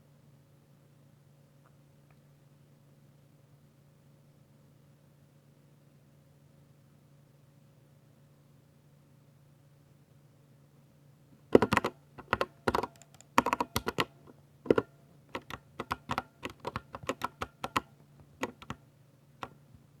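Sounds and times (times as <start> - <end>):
mechanical keyboard keystroke clacks: 11.6 - 18.8.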